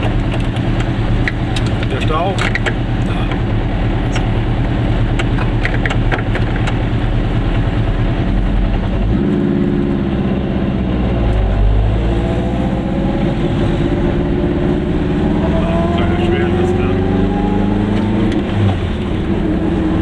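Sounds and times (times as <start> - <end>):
two-stroke engine running: 0.0 - 9.0.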